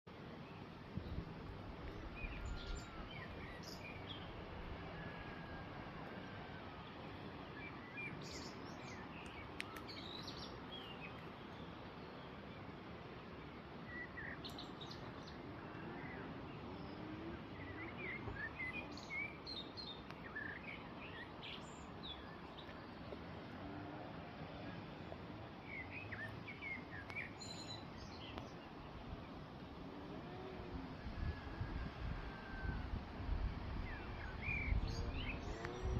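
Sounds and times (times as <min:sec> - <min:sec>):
small birds chirping: 0:07.6 - 0:12.3, 0:25.7 - 0:29.4.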